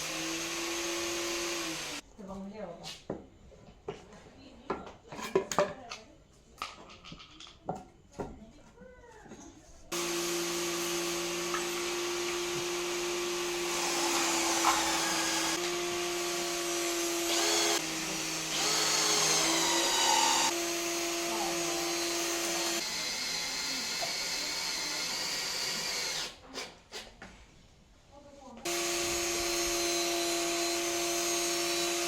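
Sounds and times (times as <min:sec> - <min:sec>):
power tool motor whining: 0:00.0 - 0:02.0, 0:09.9 - 0:26.4, 0:28.7 - 0:32.0.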